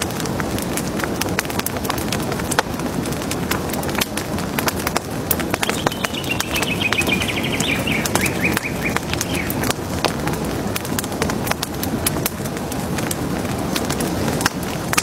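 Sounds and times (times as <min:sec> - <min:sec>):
low rumbling murmur: 0:00.0 - 0:15.0
bird trilling: 0:05.6 - 0:09.6.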